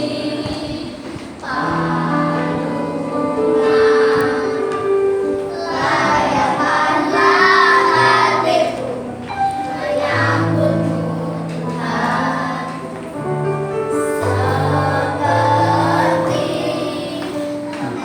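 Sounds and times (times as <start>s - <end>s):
children singing: 0.0s - 18.0s
instrumental backing: 0.0s - 18.0s.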